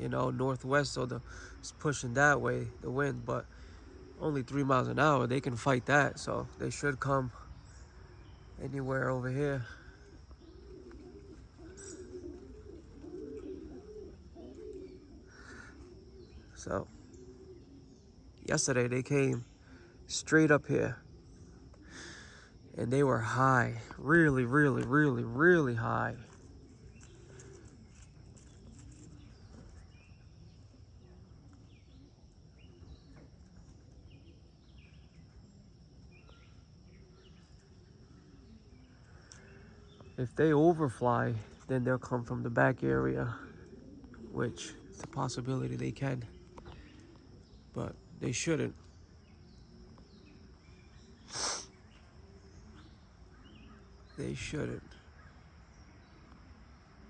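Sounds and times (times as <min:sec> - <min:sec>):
high insect drone: 0:00.0 - 0:57.0
pigeons cooing: 0:00.0 - 0:57.0
short bird chirps: 0:49.6 - 0:53.8.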